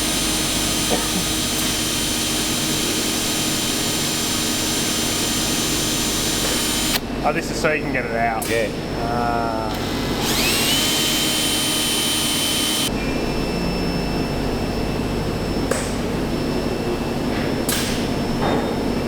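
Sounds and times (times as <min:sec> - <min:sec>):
power tool whining: 0:00.0 - 0:07.0, 0:09.5 - 0:12.9
machinery hum: 0:00.0 - 0:19.0.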